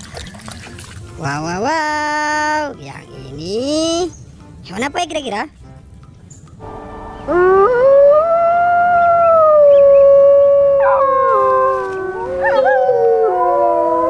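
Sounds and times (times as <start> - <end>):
wolves howling: 7.3 - 14.0.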